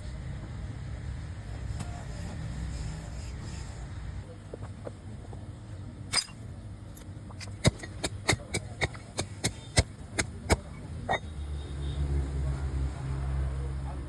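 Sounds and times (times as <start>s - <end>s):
sharp knocks: 7.4s - 11.2s.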